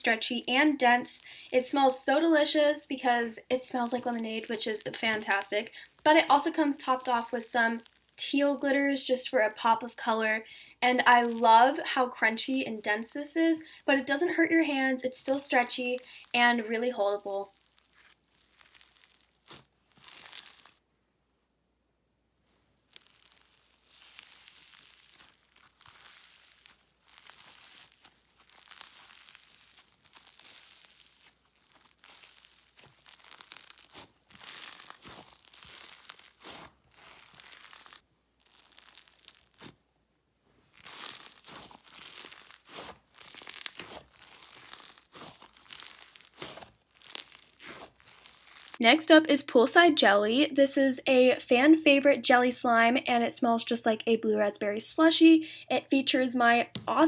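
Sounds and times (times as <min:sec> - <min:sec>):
crunchy slime crackling: 0:00.0 - 0:09.0, 0:11.2 - 0:12.1, 0:15.1 - 0:20.8, 0:22.8 - 0:39.8, 0:40.6 - 0:48.9.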